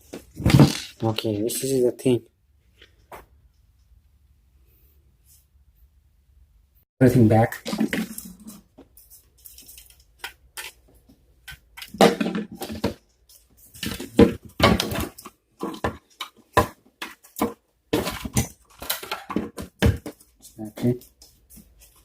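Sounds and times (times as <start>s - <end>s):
plastic and metal parts clattering: 11.4s - 20.9s.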